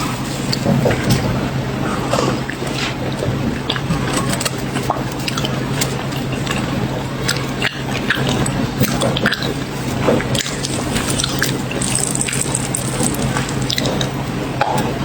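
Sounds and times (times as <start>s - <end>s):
chewing and crunching cookies: 3.7s - 14.2s.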